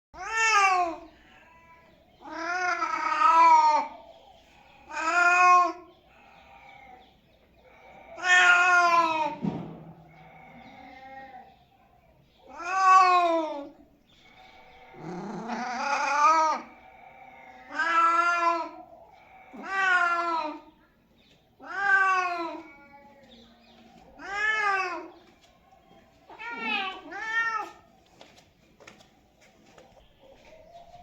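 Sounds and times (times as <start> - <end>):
cat meowing: 0.2 - 4.0, 8.0 - 9.4, 12.4 - 13.8, 14.9 - 16.8, 17.5 - 20.7, 21.6 - 23.3, 24.1 - 25.1, 26.3 - 27.9.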